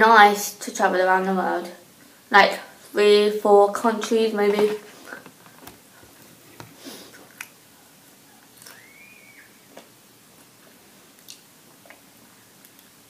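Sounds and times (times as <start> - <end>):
soft chewing: 4.9 - 9.0, 9.7 - 13.0
short rising squeak: 8.7 - 9.6.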